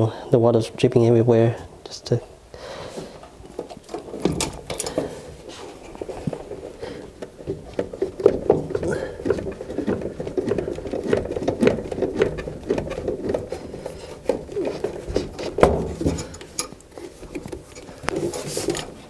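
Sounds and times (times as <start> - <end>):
hands clicking and tapping parts: 3.2 - 5.2, 6.0 - 19.0.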